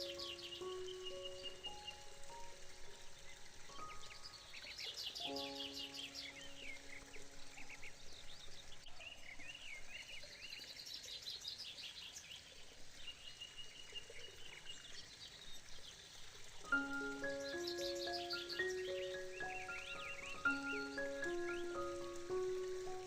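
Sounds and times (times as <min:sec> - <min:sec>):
soft held music chord: 0:00.0 - 0:08.8, 0:16.7 - 0:23.0
faint background hiss: 0:00.0 - 0:23.0
small birds chirping: 0:00.0 - 0:23.0.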